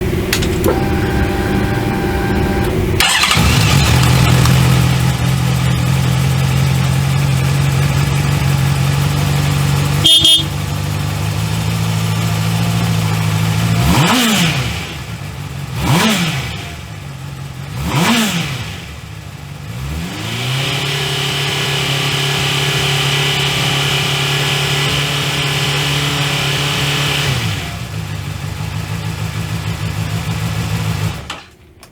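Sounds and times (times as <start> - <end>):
starter motor whine: 0.0 - 13.8
motorcycle engine idling: 0.0 - 20.3, 21.9 - 31.9
engine revving: 0.0 - 31.3
short high-pitched beep: 10.0 - 10.6.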